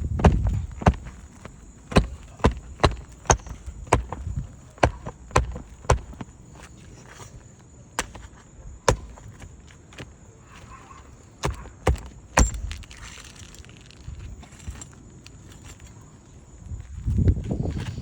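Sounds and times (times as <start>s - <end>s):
hand tool knocking on shingle roof: 0.0s - 6.3s, 8.0s - 8.3s, 8.9s - 9.5s, 11.4s - 12.8s.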